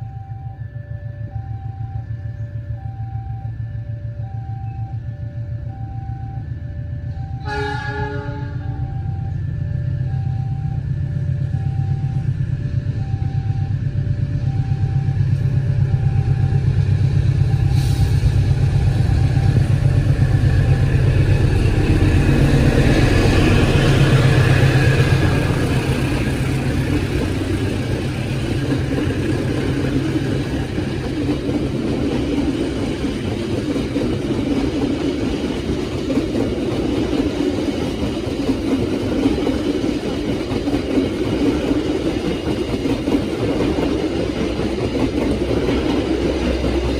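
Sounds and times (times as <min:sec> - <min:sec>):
level-crossing alarm two tones: 0:00.0 - 0:33.8
locomotive engine drone: 0:00.0 - 0:46.9
train rolling rumble: 0:00.0 - 0:46.9.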